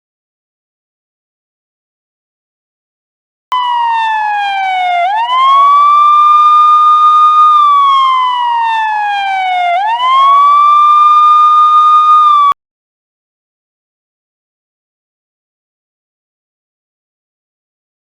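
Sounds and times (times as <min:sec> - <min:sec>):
police siren wailing: 0:03.5 - 0:12.6.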